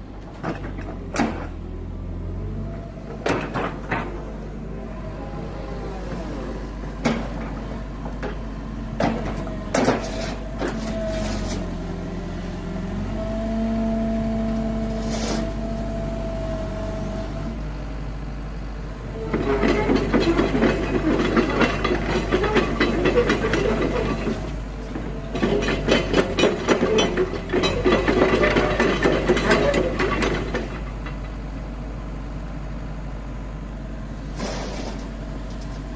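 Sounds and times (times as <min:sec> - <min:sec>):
excavator engine hum: 0:00.0 - 0:35.9
hydraulic whine: 0:09.3 - 0:17.6.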